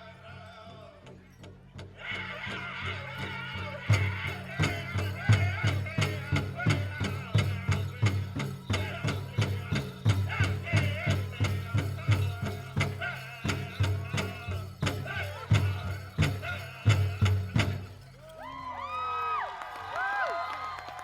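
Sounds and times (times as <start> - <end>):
singers singing in high voices: 2.0 - 17.8
large drum beat: 2.9 - 18.3.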